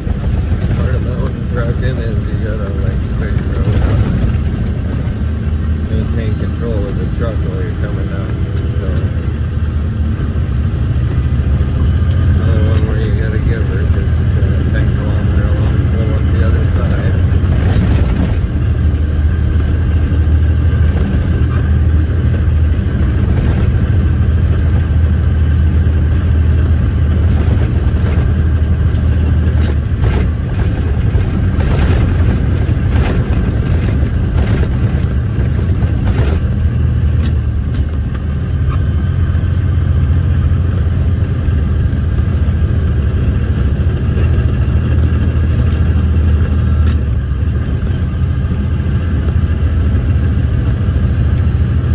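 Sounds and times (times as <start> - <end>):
knocks and rattles: 0.0 - 9.2, 11.8 - 38.3
diesel truck engine running: 0.0 - 51.9.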